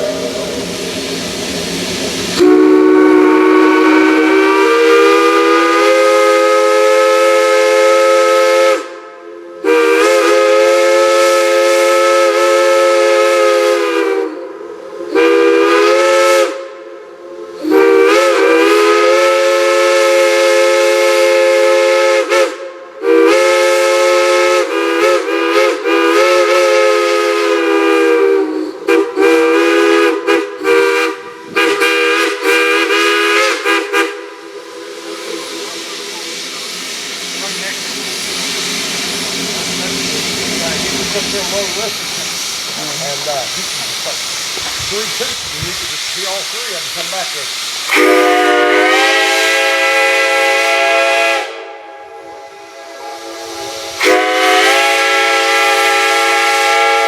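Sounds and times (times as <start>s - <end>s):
hiss of steam: 0.0s - 57.0s
steam whistle chord: 2.4s - 36.0s, 47.9s - 57.0s.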